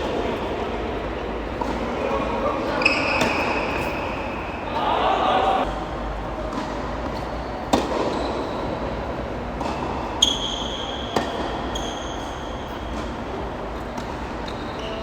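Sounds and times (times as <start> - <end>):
tennis ball struck by racket: 7.6 - 8.1.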